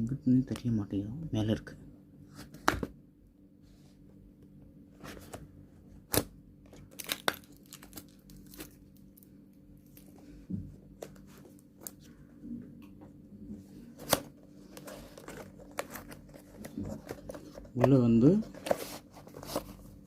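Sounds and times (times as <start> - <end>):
packaging tearing and rustling: 6.1 - 9.2, 14.0 - 17.6.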